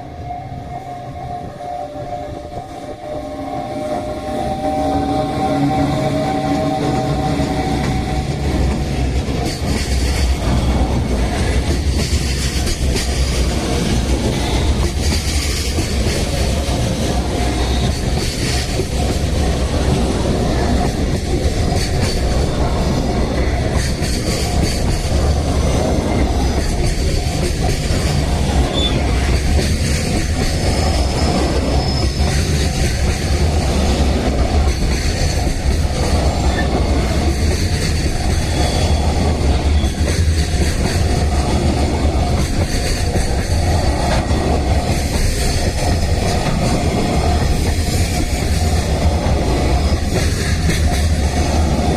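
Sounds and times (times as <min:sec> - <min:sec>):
freight train wheels rumbling: 0:00.0 - 0:51.9
faint wheel squeal: 0:31.0 - 0:32.4.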